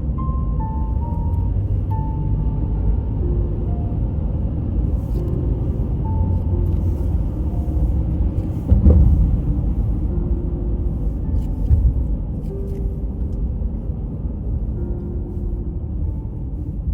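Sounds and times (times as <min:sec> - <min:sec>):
car road and engine rumble: 0:00.0 - 0:16.9
quiet music: 0:00.0 - 0:16.9
car bump: 0:08.4 - 0:10.1.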